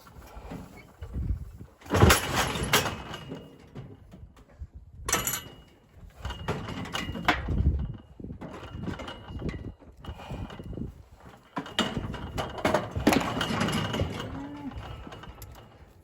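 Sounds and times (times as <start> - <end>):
steel gates clanging and rattling: 1.8 - 3.9, 5.1 - 9.7, 11.3 - 16.0.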